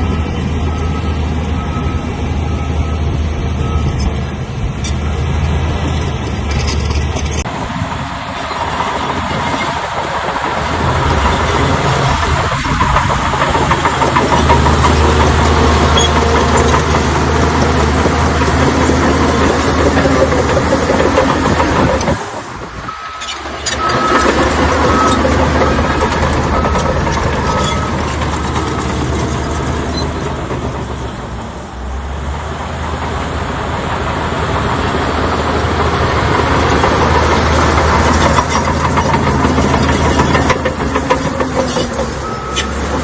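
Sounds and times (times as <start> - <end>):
reversing alarm beeping: 0.0 - 4.1, 22.8 - 29.2, 42.2 - 42.9
bulldozer diesel engine running: 0.0 - 43.0.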